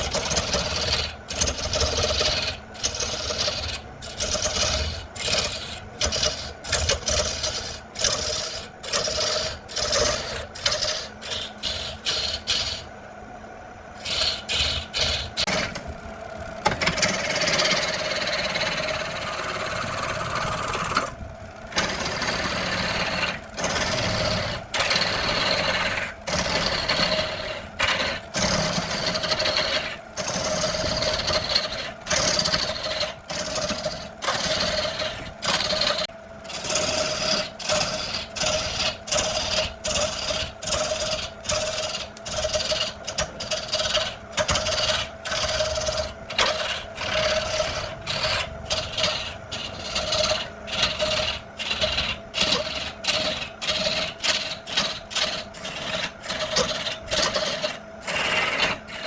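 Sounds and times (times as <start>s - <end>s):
wood being scraped in strokes: 0.0s - 12.8s, 14.0s - 15.8s, 21.7s - 59.0s
power tool whining: 14.0s - 59.0s.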